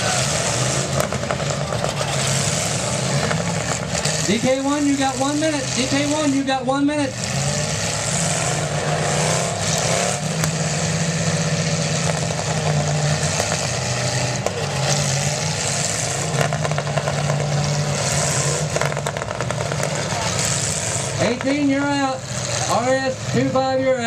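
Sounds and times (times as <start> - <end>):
car engines revving: 0.0 - 24.0.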